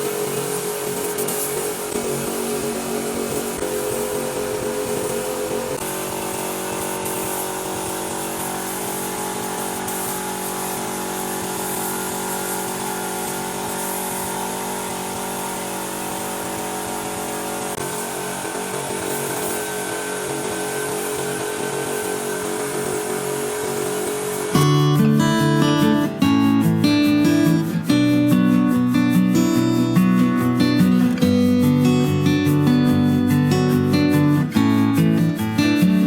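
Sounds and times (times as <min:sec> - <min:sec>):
electric power tool motor running: 0:00.0 - 0:25.7.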